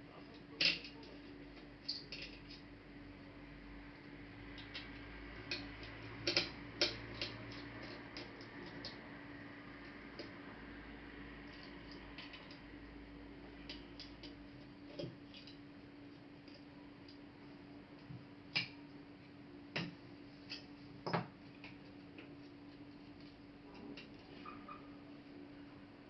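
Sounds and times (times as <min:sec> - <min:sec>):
faint steady hum: 0:00.0 - 0:26.0
clicks of laptop parts and tools: 0:04.5 - 0:09.0.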